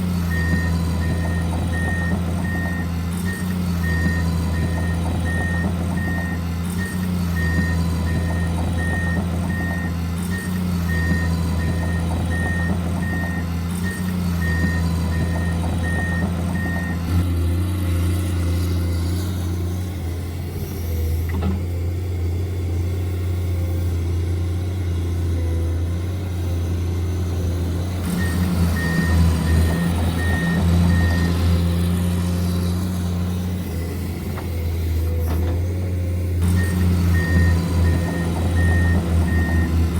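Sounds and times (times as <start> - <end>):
simulated diesel engine hum: 0.0 - 39.9
reversing beeper beeping: 0.3 - 17.2, 28.1 - 31.9, 36.4 - 39.9.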